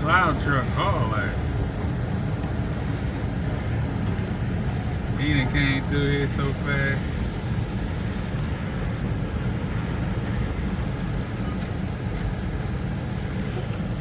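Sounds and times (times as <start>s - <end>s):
car engine and tyres rumbling: 0.0s - 14.0s.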